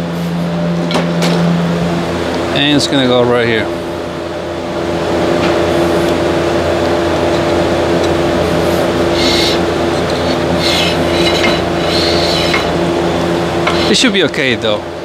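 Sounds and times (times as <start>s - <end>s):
machine hum with low rumble: 0.0s - 15.0s
short high-pitched scrapes: 9.0s - 12.8s, 13.7s - 14.0s.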